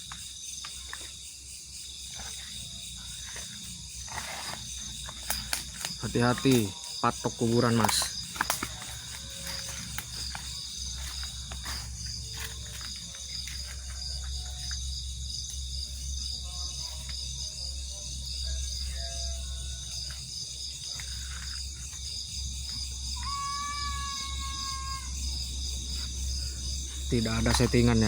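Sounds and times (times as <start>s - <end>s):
night insects chirring: 0.0s - 28.0s.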